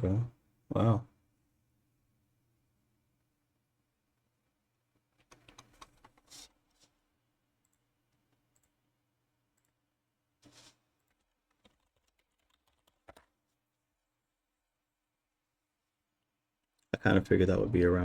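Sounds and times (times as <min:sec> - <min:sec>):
faint keyboard typing: 0:04.9 - 0:13.8.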